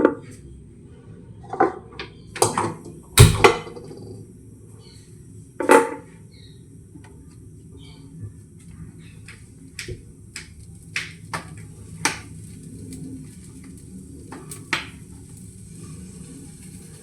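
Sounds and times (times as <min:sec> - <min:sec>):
low steady hum: 0:03.2 - 0:03.8.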